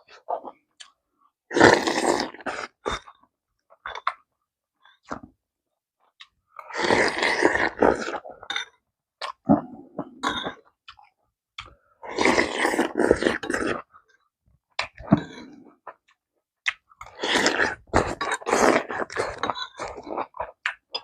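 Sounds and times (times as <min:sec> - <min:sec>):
chewing and smacking: 0:09.2 - 0:21.0.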